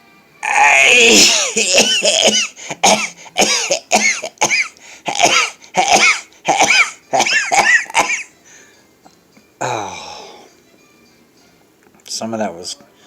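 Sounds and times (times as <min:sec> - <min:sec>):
man sneezing: 0:00.8 - 0:08.2.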